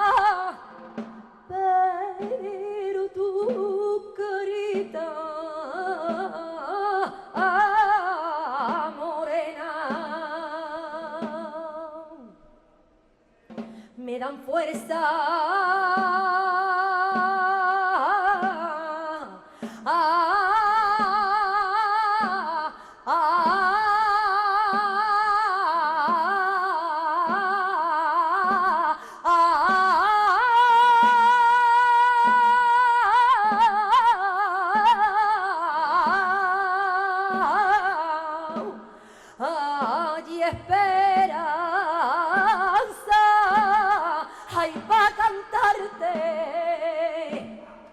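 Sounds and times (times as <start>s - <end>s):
orchestral accompaniment with beat: 0.0s - 1.5s.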